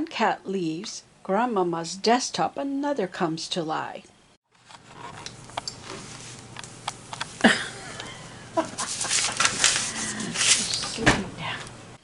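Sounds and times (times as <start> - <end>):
rustling: 8.7 - 11.0.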